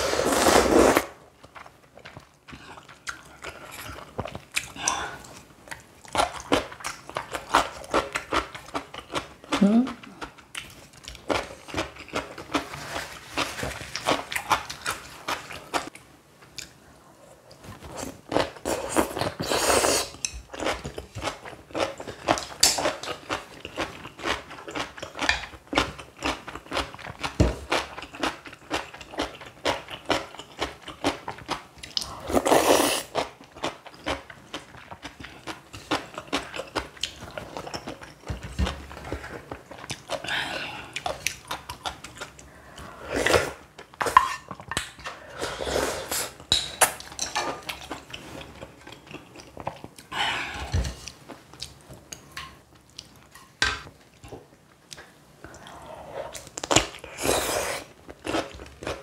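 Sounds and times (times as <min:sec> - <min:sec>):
chewing and crunching: 0:33.1 - 0:42.5.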